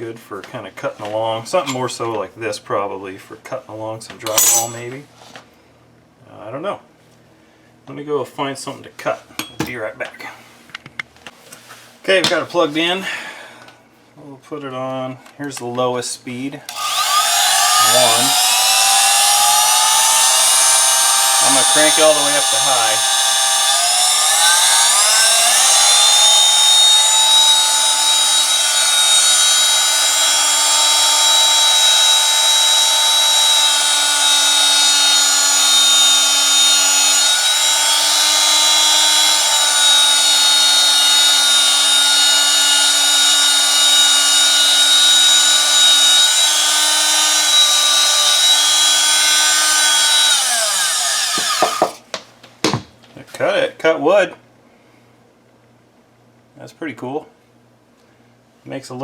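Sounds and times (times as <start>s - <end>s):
multi-tool motor whining: 4.3s - 4.8s, 16.7s - 52.0s.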